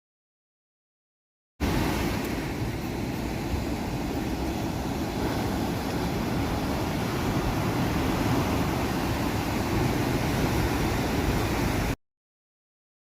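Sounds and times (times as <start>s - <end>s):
sea surf: 1.6s - 12.0s
wind at the shore: 1.6s - 12.0s.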